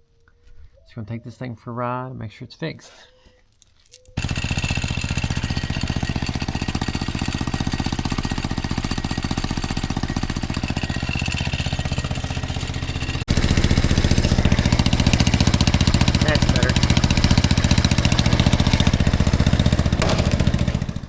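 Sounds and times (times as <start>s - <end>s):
small engine running: 4.2s - 21.0s.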